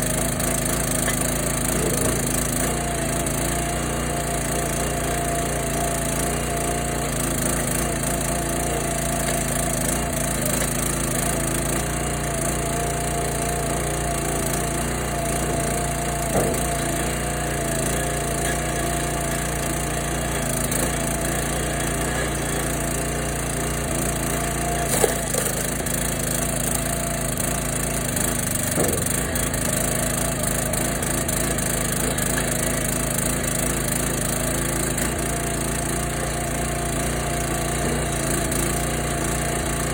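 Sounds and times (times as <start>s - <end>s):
log splitter engine running: 0.0s - 39.9s
wood splitting cracks: 24.8s - 25.8s.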